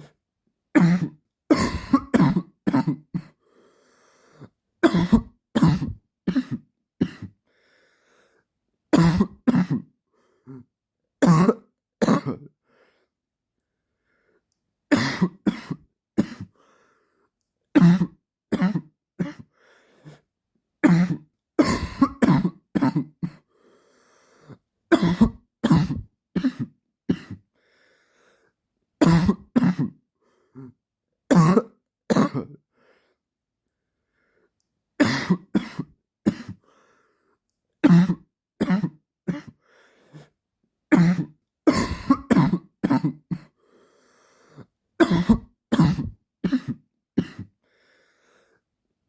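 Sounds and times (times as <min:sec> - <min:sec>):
man's dry cough: 0:00.8 - 0:03.4, 0:04.8 - 0:07.4, 0:09.0 - 0:09.9, 0:11.2 - 0:12.5, 0:14.9 - 0:16.5, 0:17.8 - 0:19.5, 0:20.8 - 0:23.4, 0:24.9 - 0:27.4, 0:29.0 - 0:30.0, 0:31.3 - 0:32.6, 0:35.0 - 0:36.6, 0:37.8 - 0:39.6, 0:40.9 - 0:43.5, 0:45.0 - 0:47.6.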